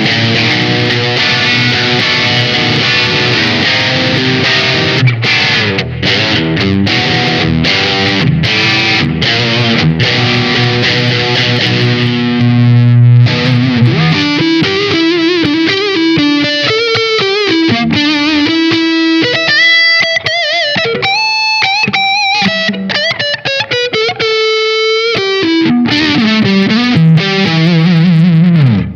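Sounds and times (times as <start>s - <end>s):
overdriven electric guitar lead: 0.0s - 28.9s.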